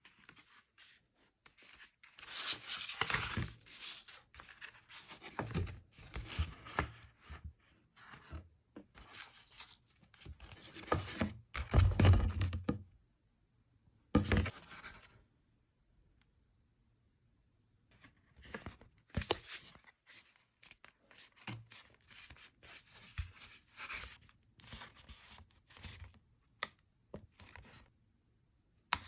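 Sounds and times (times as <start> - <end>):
paper card rustling and scraping: 0.0 - 7.4, 9.0 - 11.8, 14.2 - 15.1, 18.1 - 26.1.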